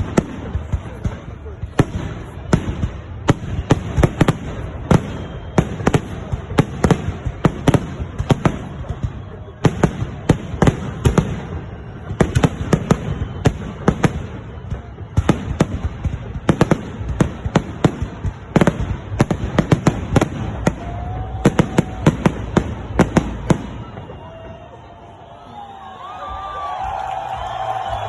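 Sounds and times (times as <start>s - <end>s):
fireworks bangs: 0.0s - 28.0s.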